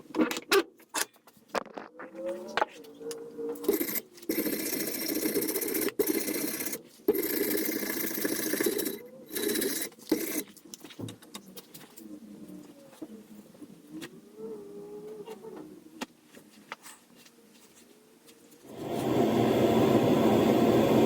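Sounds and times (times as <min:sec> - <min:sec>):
power grinder grinding: 0:03.6 - 0:10.4.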